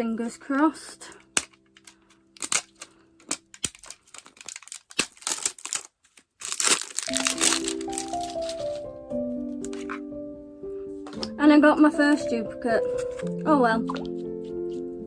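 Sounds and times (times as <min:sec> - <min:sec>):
plastic wrapper tearing and crinkling: 0:01.1 - 0:10.0.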